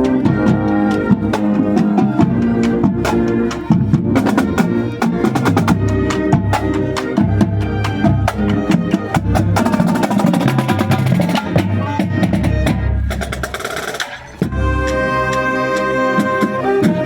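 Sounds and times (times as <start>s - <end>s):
marching band playing: 0.0s - 17.0s
snare and bass drum patterns: 0.0s - 17.0s.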